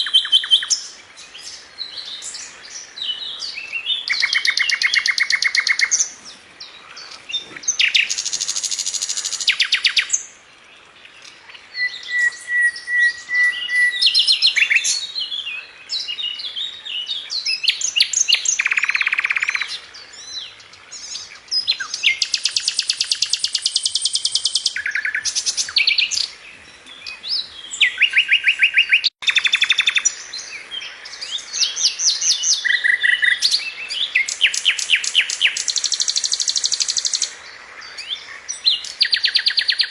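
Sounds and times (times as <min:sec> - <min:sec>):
bird chirps: 0:00.0 - 0:10.4, 0:11.0 - 0:39.9
songbirds trilling: 0:00.0 - 0:39.9
short bird whistle: 0:11.8 - 0:14.2.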